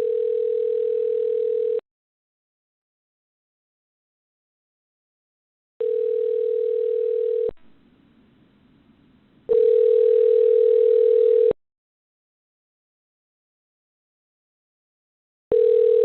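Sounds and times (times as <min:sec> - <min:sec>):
telephone ringback tone: 0:00.0 - 0:01.8, 0:05.8 - 0:07.5, 0:09.5 - 0:11.6, 0:15.5 - 0:16.0.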